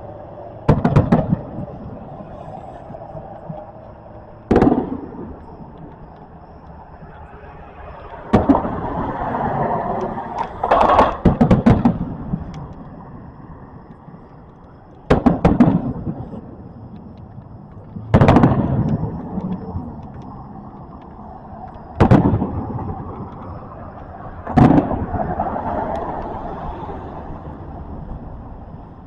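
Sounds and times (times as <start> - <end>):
rumbling echo: 0.0 - 28.8
fireworks bangs: 0.5 - 7.3, 8.2 - 12.9, 15.0 - 17.1, 17.8 - 20.3, 21.9 - 23.6, 24.4 - 26.2.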